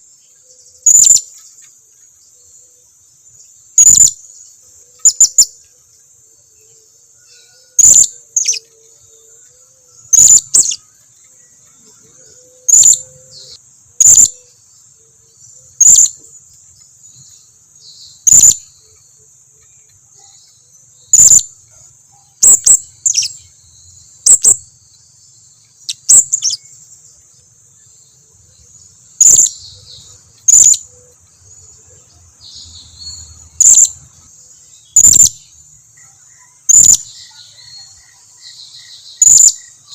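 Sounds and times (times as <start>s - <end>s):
parrot chirping: 18.2s - 18.6s, 21.1s - 21.5s, 29.2s - 29.6s, 30.5s - 30.8s, 35.0s - 35.3s.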